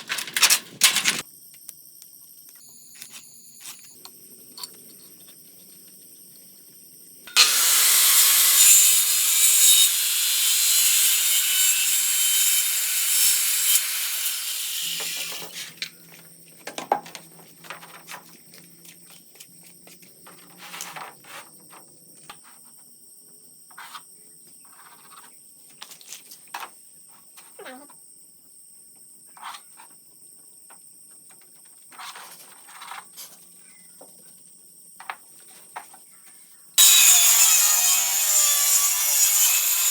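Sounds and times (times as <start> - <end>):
electric power saw cutting: 7.3 - 15.5, 36.8 - 39.9.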